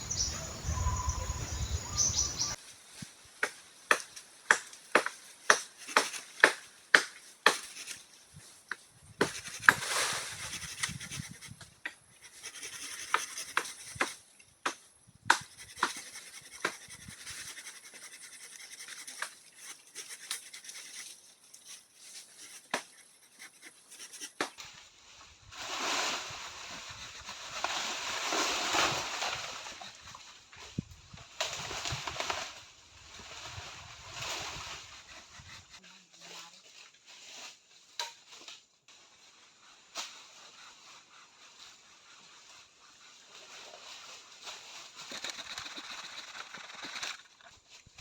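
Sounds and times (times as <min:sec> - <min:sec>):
scraping and rustling: 0:38.2 - 0:48.0.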